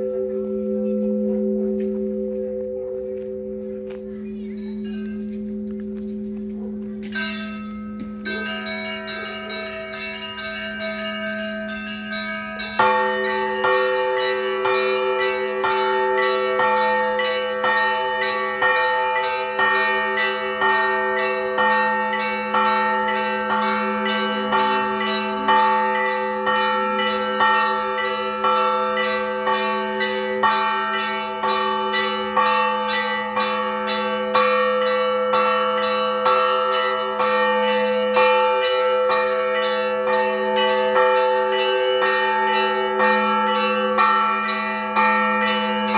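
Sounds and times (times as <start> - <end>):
deep bell humming: 0.0 - 45.9
small bells striking rapidly: 6.9 - 45.9.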